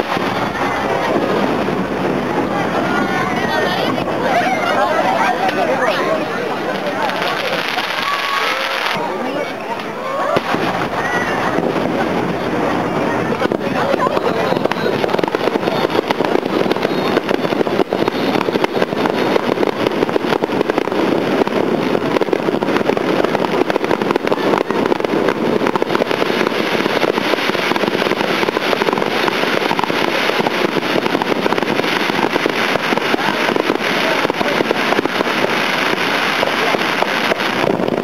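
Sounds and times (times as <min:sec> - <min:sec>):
fireworks bursts and crackles: 0:00.0 - 0:38.0.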